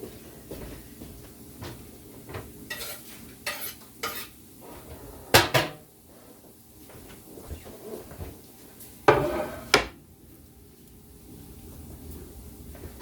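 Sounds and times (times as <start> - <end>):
onions sizzling in pan: 2.6 - 4.6
utensil scraping and clinking on pan: 2.7 - 4.4, 9.1 - 9.8.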